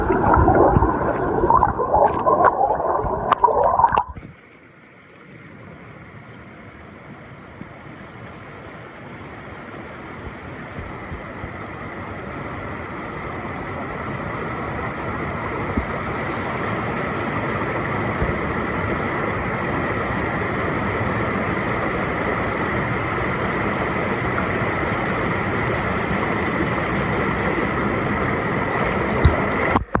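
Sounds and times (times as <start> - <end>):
river water rushing: 0.0 - 4.1.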